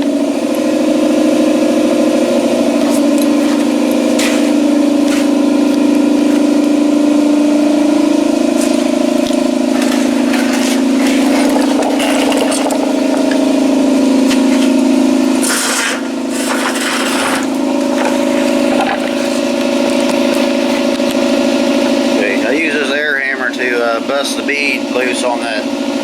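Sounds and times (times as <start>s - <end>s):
engine idling: 0.0s - 26.0s
tool scraping and knocking on rim: 2.8s - 6.5s.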